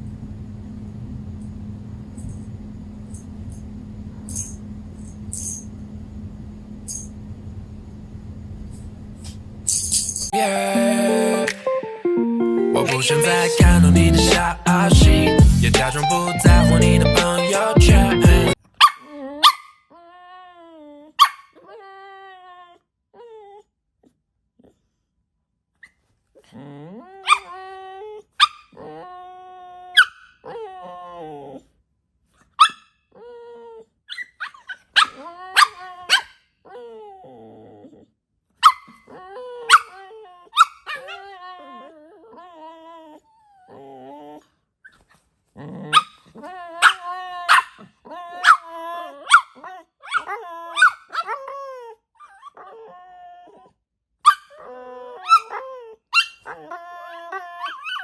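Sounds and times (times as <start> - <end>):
dog whining: 18.5 - 24.8, 25.8 - 31.7, 32.4 - 58.0
dog barking: 18.8 - 19.8, 21.2 - 21.5, 32.6 - 32.8, 35.0 - 36.3, 38.6 - 38.9, 46.8 - 47.8, 48.4 - 48.6, 49.3 - 51.3.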